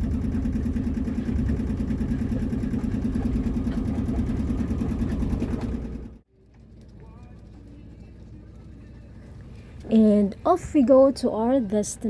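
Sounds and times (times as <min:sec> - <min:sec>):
boat engine idling: 0:00.0 - 0:06.2.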